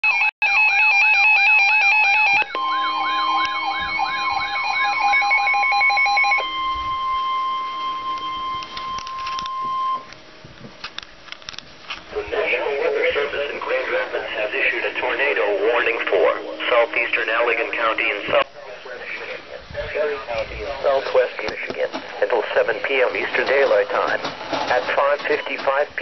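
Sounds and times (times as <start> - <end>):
electronic alarm tones beeping: 0.0 - 10.2, 25.2 - 25.7
falling siren-like warble: 0.0 - 10.2
steady warning tone: 0.0 - 10.4, 12.1 - 26.0.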